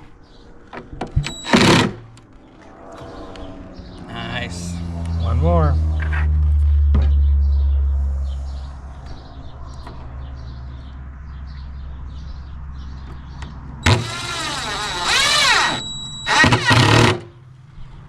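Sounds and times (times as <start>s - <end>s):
loud low hum: 1.2s - 9.0s, 13.8s - 17.4s
drill-driver motor whirring: 1.3s - 2.0s, 13.8s - 17.2s.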